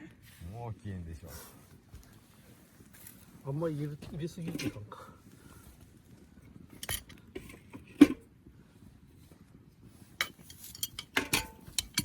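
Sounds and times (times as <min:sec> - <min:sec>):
metallic cookware clinks: 0:10.2 - 0:12.0.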